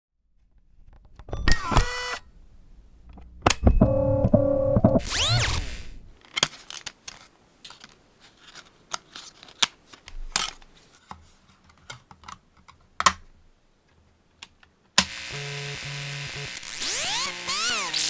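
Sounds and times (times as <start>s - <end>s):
camcorder clicks and crackles: 1.2s - 2.3s
camcorder whine falling in pitch: 1.3s - 2.4s, 3.1s - 6.1s.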